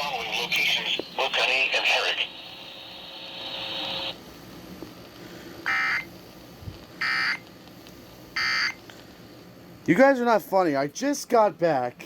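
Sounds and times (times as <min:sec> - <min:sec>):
buzzy data bursts: 0:07.0 - 0:07.5, 0:08.4 - 0:08.8.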